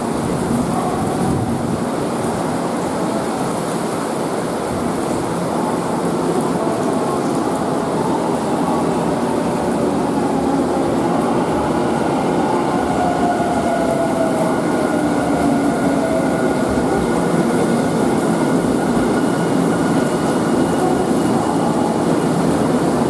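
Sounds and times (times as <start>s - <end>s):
electric train rumbling: 0.0s - 23.0s.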